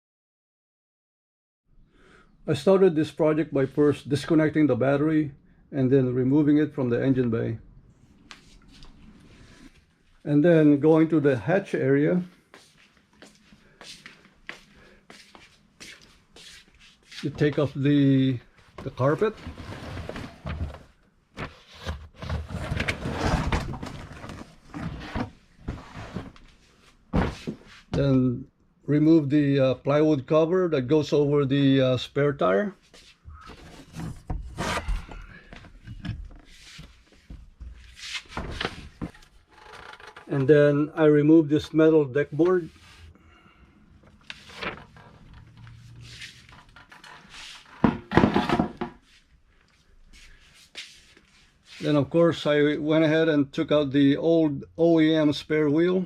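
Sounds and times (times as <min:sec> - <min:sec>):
carpet rustling and scraping: 0:18.6 - 0:28.0, 0:32.8 - 0:40.1, 0:44.0 - 0:49.4.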